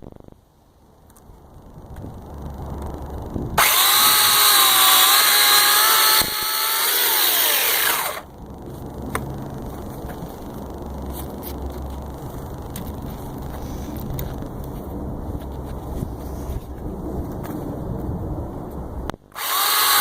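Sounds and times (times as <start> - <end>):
electric chainsaw running: 3.1 - 8.6, 19.3 - 20.0.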